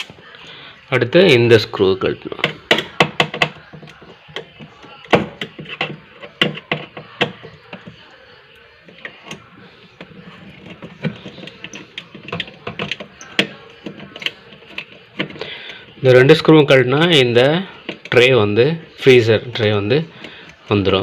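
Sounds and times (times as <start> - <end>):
screwdriver clicking and tapping: 2.4 - 8.1, 10.0 - 15.4.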